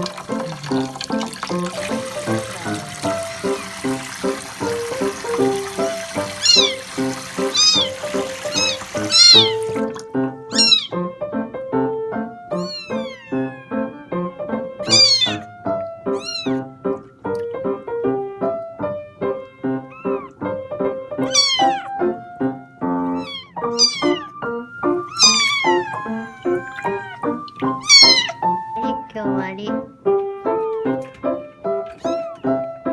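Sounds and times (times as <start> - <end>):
piano music: 0.0 - 32.9
kitten meowing: 1.7 - 11.0, 12.5 - 16.7, 19.7 - 20.4, 21.2 - 22.2, 23.0 - 29.1, 31.9 - 32.6.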